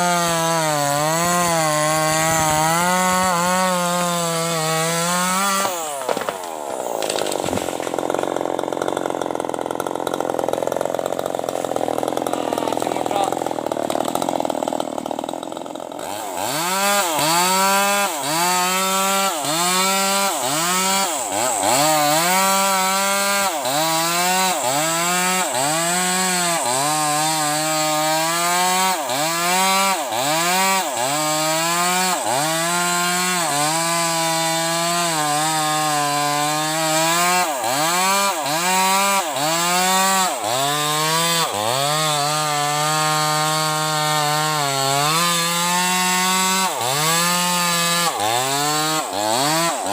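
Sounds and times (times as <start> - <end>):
chainsaw cutting wood: 0.0 - 49.9.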